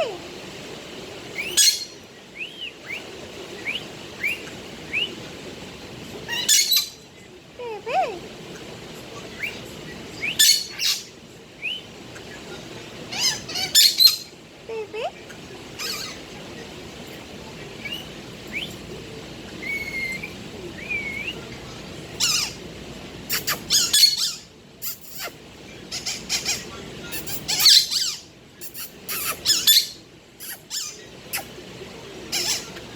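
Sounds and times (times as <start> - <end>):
budgerigar chirping and squawking: 1.4 - 2.0, 6.3 - 7.0, 10.2 - 11.1, 13.1 - 14.3, 22.2 - 22.6, 23.3 - 31.5, 32.3 - 32.8.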